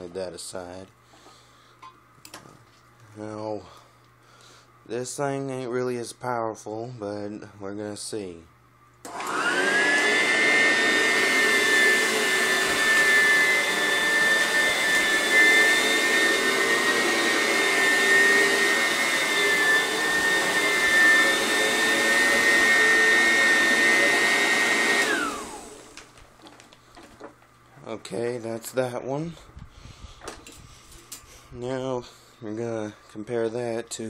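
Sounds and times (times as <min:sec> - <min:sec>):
upright vacuum motor whine: 0:09.0 - 0:26.6.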